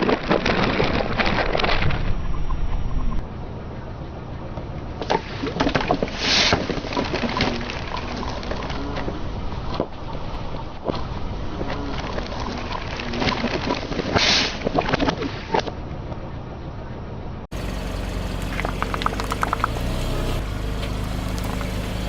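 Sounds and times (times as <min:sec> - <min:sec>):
objects crunching under a car: 0:00.0 - 0:02.3, 0:05.0 - 0:15.8, 0:18.2 - 0:22.0
car engine running: 0:17.5 - 0:22.0
quick clicks: 0:18.5 - 0:19.9.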